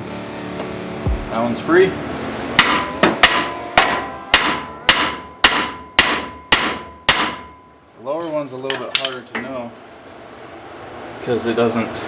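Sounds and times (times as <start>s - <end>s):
hammer striking steel: 2.5s - 7.7s.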